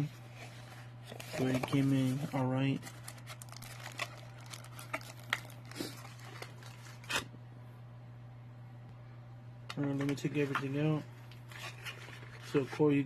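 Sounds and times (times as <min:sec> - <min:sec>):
low hum: 0:00.0 - 0:12.8
cardboard packaging rustling: 0:00.3 - 0:07.2, 0:11.4 - 0:13.0.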